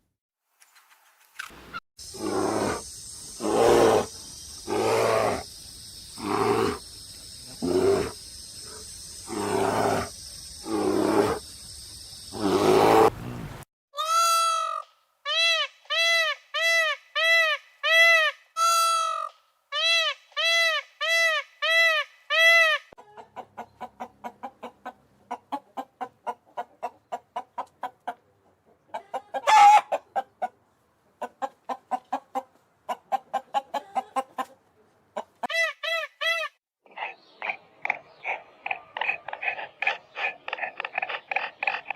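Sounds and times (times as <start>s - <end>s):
chickens calling: 22.6s - 34.6s, 35.2s - 41.9s
chickens clucking: 23.0s - 35.5s, 36.9s - 41.9s
chicken squawk: 28.9s - 30.5s.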